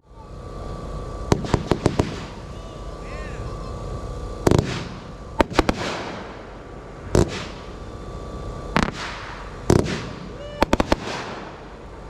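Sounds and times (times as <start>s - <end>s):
fireworks bangs: 1.3s - 2.4s, 4.4s - 6.4s, 7.1s - 7.7s, 8.7s - 11.8s.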